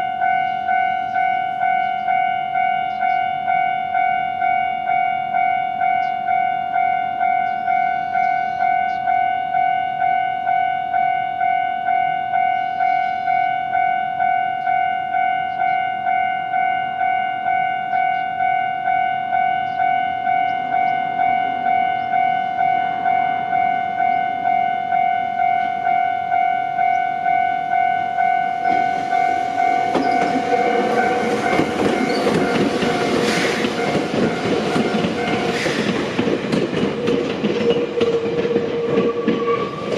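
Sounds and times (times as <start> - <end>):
level crossing warning bell: 0.0 - 35.7
train wheels clacking over rails: 28.6 - 39.9.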